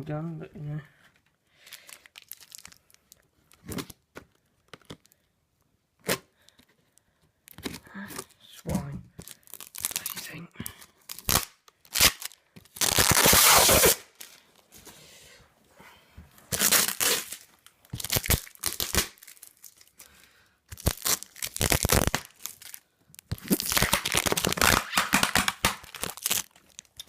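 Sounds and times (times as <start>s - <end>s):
wrapping crinkling: 1.6s - 5.2s, 9.2s - 14.8s, 16.5s - 27.0s
packing tape tearing: 9.2s - 10.3s, 11.0s - 14.4s, 16.5s - 20.0s, 20.7s - 27.0s.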